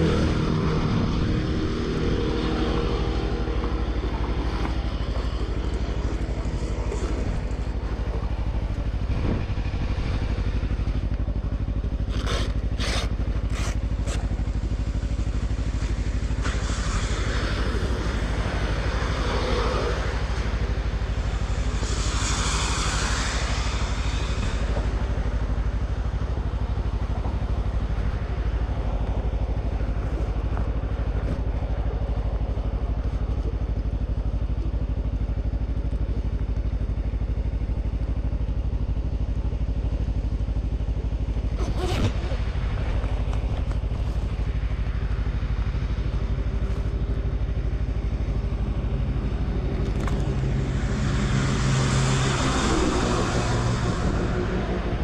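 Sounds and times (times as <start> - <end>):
vehicle engine droning: 0.0 - 55.0
rushing hiss: 15.7 - 25.5.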